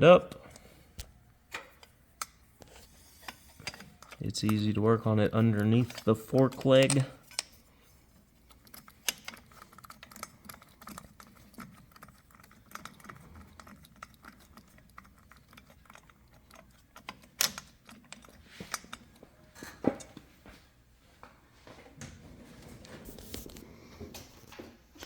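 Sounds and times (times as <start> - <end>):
tools clicking and tapping: 1.5 - 7.7, 8.5 - 14.8, 15.4 - 20.2.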